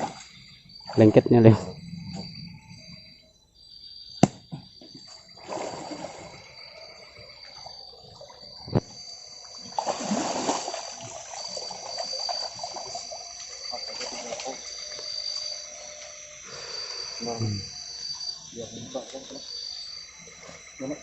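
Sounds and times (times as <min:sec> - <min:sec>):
water splashing and trickling: 0:00.0 - 0:01.2, 0:05.0 - 0:06.7, 0:09.4 - 0:14.8
high insect trill: 0:00.0 - 0:21.0
sharp knocks: 0:04.2 - 0:04.7.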